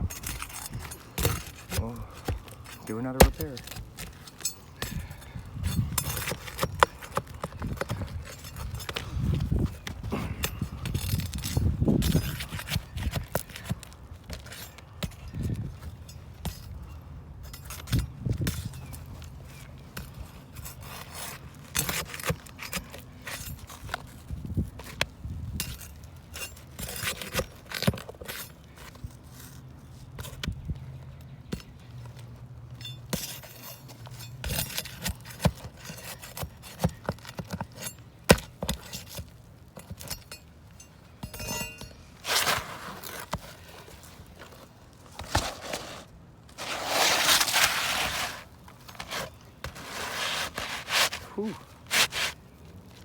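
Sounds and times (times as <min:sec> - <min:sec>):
scraping on shingles: 0:00.0 - 0:15.8, 0:17.6 - 0:30.5, 0:31.8 - 0:53.0
taps and knocks on shingles: 0:00.2 - 0:05.2.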